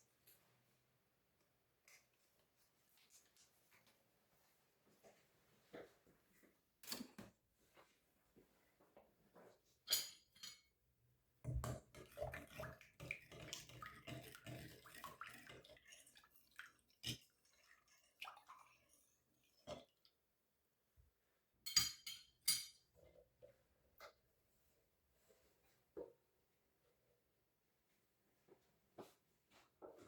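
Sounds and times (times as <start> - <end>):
dishes clinking: 21.7 - 22.9.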